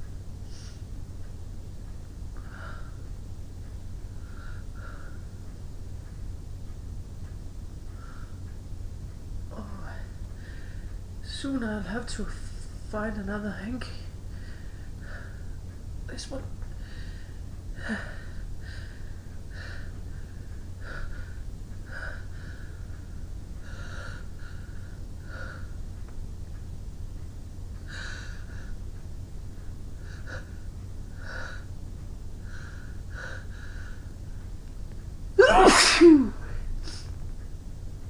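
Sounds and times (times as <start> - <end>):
woman sneezing loudly: 35.4 - 37.0.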